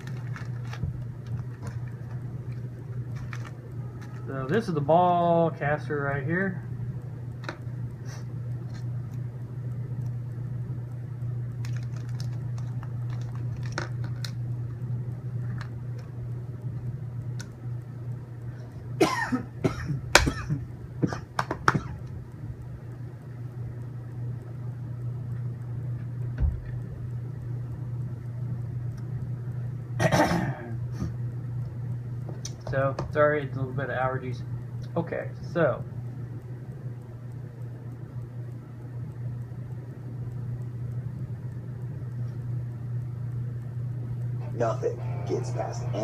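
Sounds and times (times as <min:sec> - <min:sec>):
steady low hum: 0:00.0 - 0:46.0
person clearing throat: 0:19.0 - 0:22.0, 0:30.0 - 0:31.1
person coughing: 0:19.0 - 0:22.0, 0:30.0 - 0:31.1.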